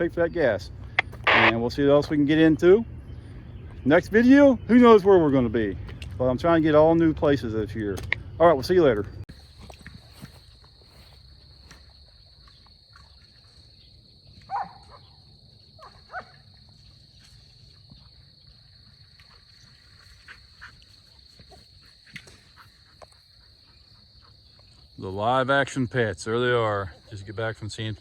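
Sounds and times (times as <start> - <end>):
crickets chirring: 0.0 - 28.0
short animal calls: 1.0 - 1.6.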